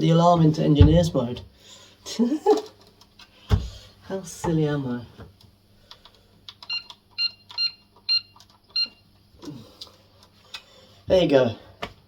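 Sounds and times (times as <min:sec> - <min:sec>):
alarm keypad beeps: 0:06.7 - 0:09.0.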